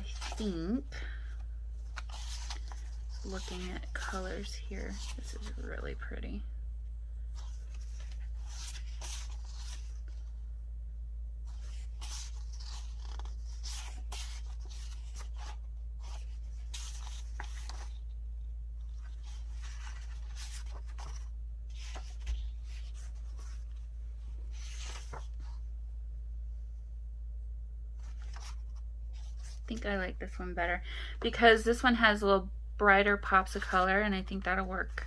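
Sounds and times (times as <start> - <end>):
steady low hum: 0.0 - 35.0
paper rustling and sliding: 1.3 - 5.8, 7.4 - 10.3, 11.4 - 18.2, 18.8 - 25.7, 28.0 - 29.7.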